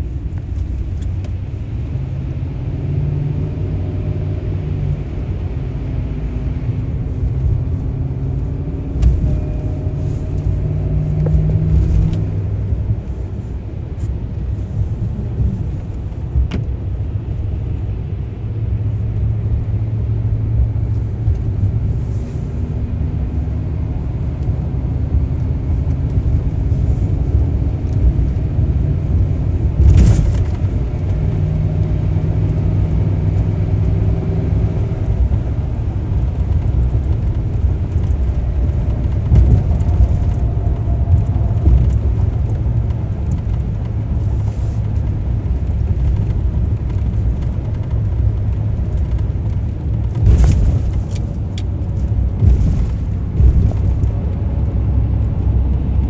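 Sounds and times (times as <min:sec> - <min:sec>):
car driving rumble: 0:00.0 - 0:56.0
sharp thumps: 0:50.1 - 0:54.1.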